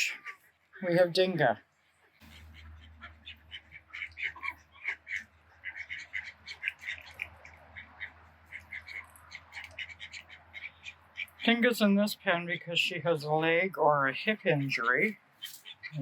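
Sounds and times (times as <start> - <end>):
ducks quacking: 0.0 - 16.0.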